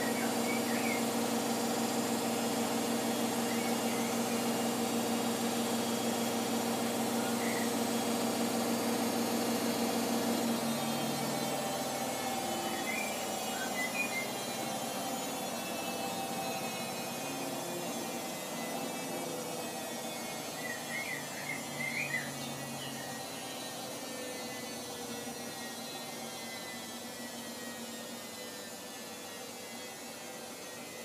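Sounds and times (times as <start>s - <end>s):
washing machine spinning: 0.0s - 31.0s.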